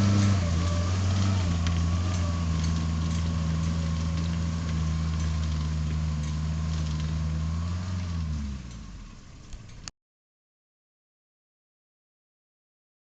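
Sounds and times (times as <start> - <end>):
engine idling and stopping: 0.0 - 9.9.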